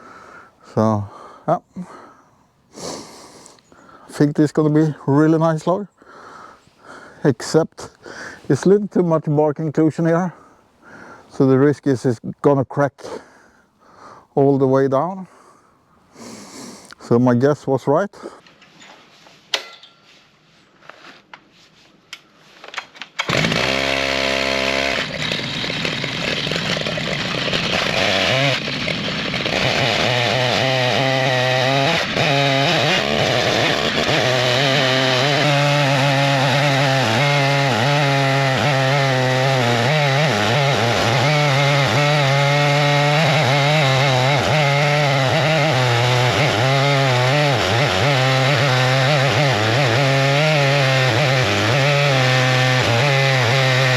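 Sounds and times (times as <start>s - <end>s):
chainsaw cutting log: 22.7s - 53.9s.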